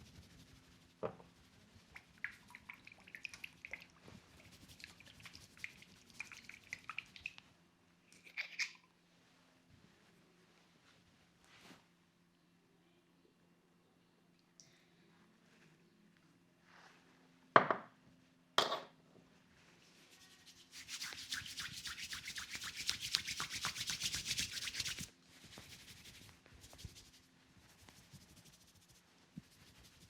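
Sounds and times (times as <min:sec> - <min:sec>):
hands rubbing hair and scalp: 0:00.0 - 0:02.6, 0:04.1 - 0:07.2, 0:19.8 - 0:30.0.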